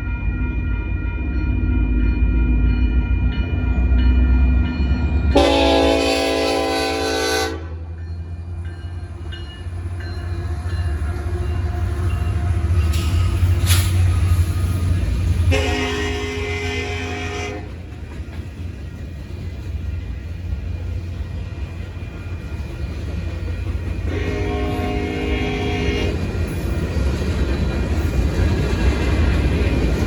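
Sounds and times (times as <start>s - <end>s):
crossing bell ringing: 0.0s - 17.5s
freight locomotives rumbling: 0.0s - 30.0s
train horn blasts: 5.3s - 8.0s, 15.5s - 17.8s, 24.0s - 26.3s.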